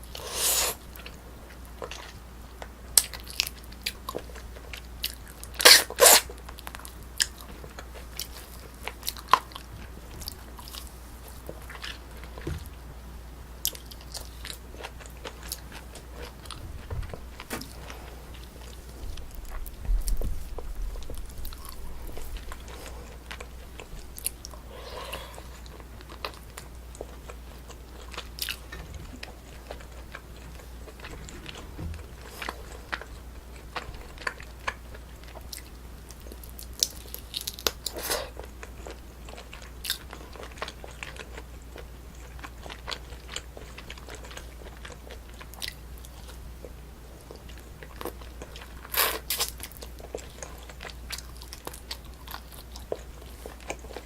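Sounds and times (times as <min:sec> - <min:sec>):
close chewing with crunchy bites: 0:00.0 - 0:12.8, 0:13.6 - 0:54.0
low steady hum: 0:00.0 - 0:54.0.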